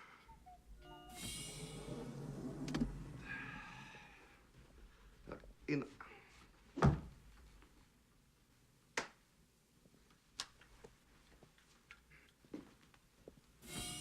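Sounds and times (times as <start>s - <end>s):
dull thump: 6.8s - 7.2s.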